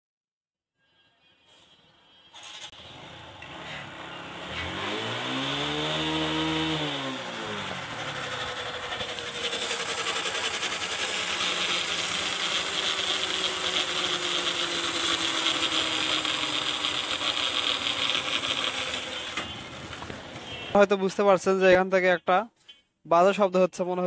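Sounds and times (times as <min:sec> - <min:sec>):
motorcycle chain grinding rattle: 0:05.3 - 0:19.4.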